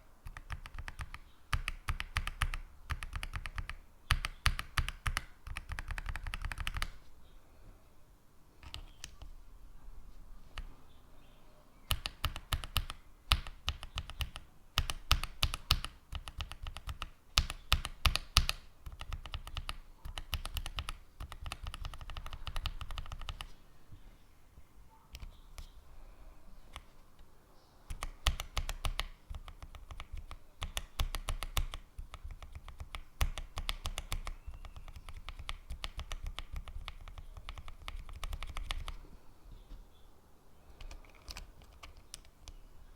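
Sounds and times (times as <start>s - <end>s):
mechanical keyboard typing: 0.2s - 7.0s, 8.6s - 9.3s, 11.9s - 23.5s, 27.9s - 39.0s, 40.8s - 42.6s.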